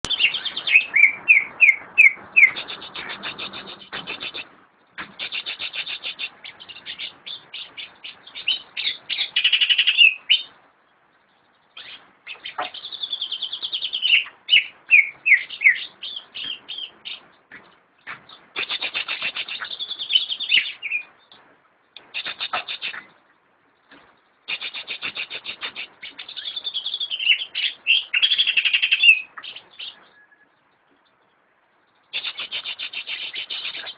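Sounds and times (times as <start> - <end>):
bird singing trills and whistles: 0.1 - 4.5, 5.2 - 10.5, 11.8 - 17.3, 18.3 - 21.4, 24.5 - 30.8, 32.1 - 33.9.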